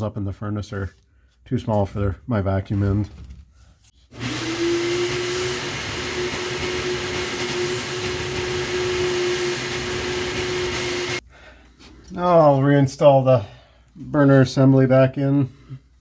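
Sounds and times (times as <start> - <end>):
vacuum cleaner running: 4.1 - 11.2.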